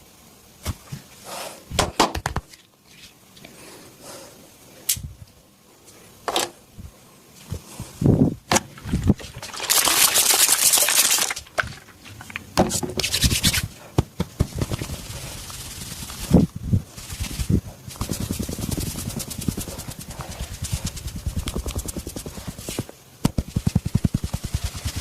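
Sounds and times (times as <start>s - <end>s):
hands rubbing hair and skin: 12.0s - 25.0s
dull thumps: 17.2s - 25.0s.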